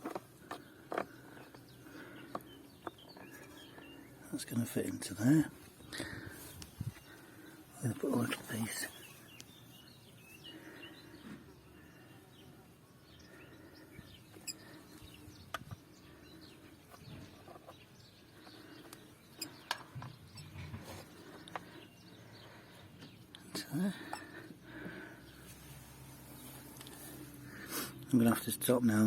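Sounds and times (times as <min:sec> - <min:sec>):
bird chirp: 0:00.0 - 0:29.0.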